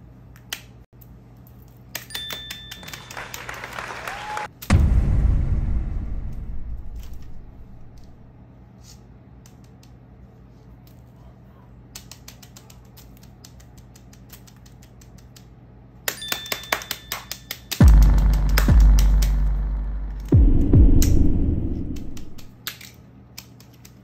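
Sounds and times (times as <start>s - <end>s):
low sound effect: 4.6s - 8.3s, 17.8s - 22.5s
plastic fidget toys clicking: 11.9s - 15.5s.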